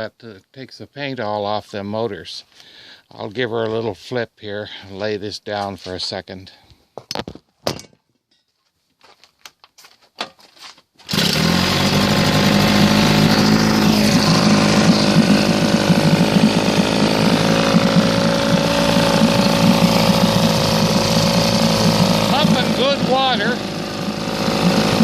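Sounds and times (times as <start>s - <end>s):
outboard motor starting and running: 11.1s - 25.0s.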